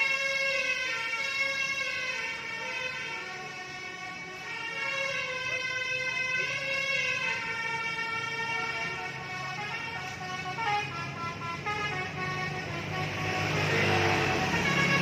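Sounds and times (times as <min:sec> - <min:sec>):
multi-tone air horn melody: 0:00.0 - 0:15.0
bus engine running: 0:06.4 - 0:15.0.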